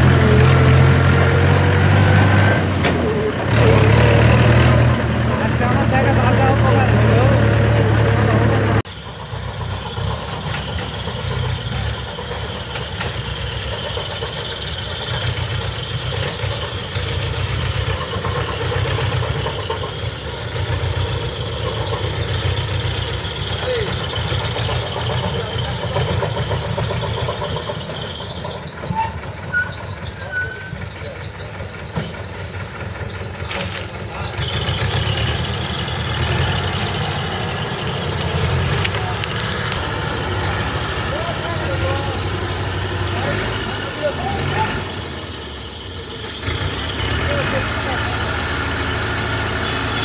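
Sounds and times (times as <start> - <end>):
diesel engine running: 0.0 - 50.0
sharp clicks: 36.4 - 40.8.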